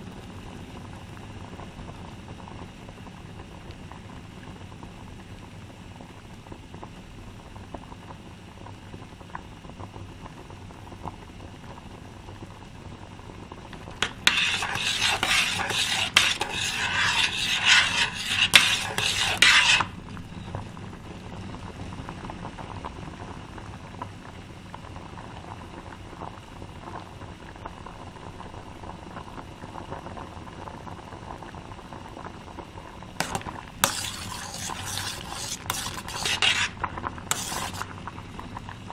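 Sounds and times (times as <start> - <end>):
utensil scraping a pot: 13.8 - 20.0, 33.2 - 38.0.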